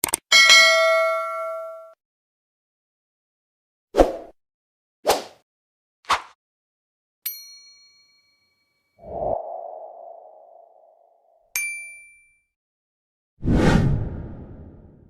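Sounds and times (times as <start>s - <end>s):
swish sweeps: 9.0s - 11.0s, 13.4s - 15.0s.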